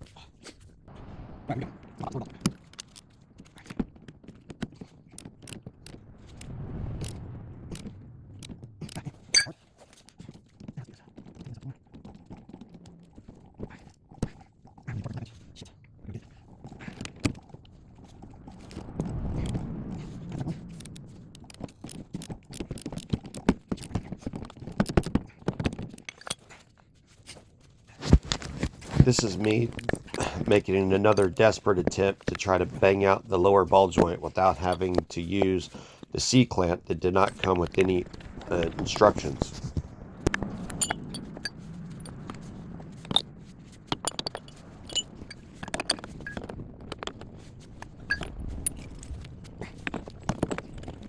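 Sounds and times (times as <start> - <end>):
metal tools clicking and scraping: 9.4 - 9.6, 44.0 - 46.4.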